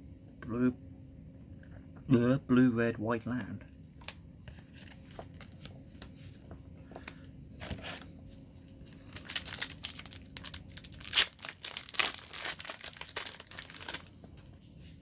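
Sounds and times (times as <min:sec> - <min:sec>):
foil wrapper tearing and crinkling: 0:08.9 - 0:14.1.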